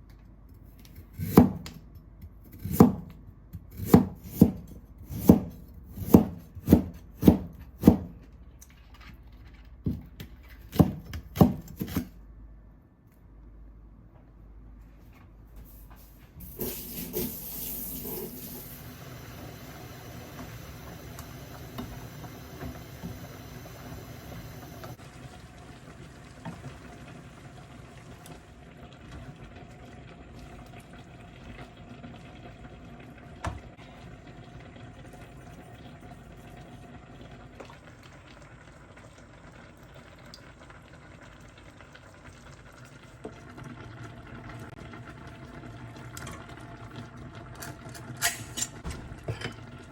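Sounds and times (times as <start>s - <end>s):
water running from tap: 16.4s - 49.9s.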